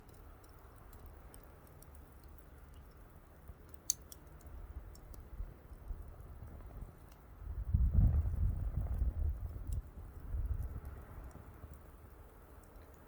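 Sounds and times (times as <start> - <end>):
wood fire crackling: 0.0 - 13.0
low rumble: 5.8 - 11.6.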